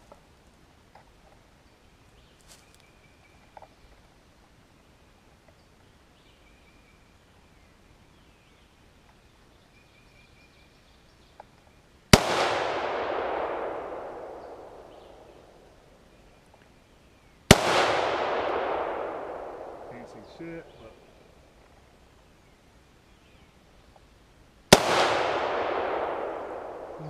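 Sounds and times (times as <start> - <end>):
explosive target sharp crack: 12.1 - 15.6, 17.5 - 21.1, 24.7 - 27.0.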